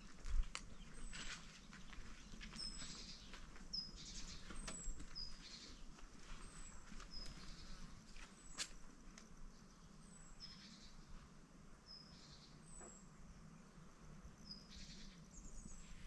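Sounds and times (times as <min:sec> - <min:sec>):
birds chirping: 0:00.0 - 0:08.6
soft footsteps: 0:00.0 - 0:08.8.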